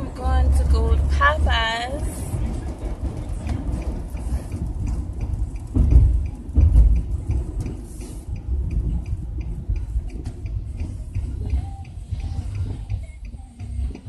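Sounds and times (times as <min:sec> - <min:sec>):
car rumble from inside cabin: 0:00.0 - 0:14.0
turn signal ticking: 0:00.0 - 0:14.0
heavy thumps: 0:00.4 - 0:07.9.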